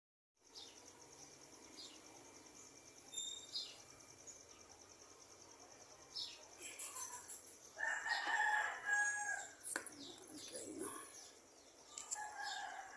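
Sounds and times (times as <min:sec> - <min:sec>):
high insect trill: 0:00.4 - 0:12.9
short bird chirps: 0:03.1 - 0:03.8.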